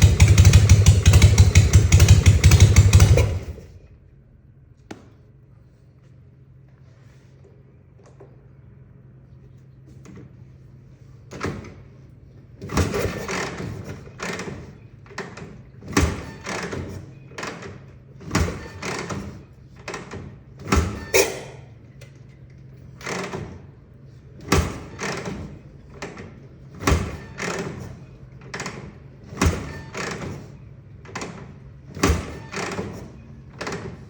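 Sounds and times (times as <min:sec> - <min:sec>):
motorcycle kick-start clunk: 0:00.0 - 0:03.9, 0:12.6 - 0:22.3, 0:22.9 - 0:23.7, 0:24.4 - 0:34.0.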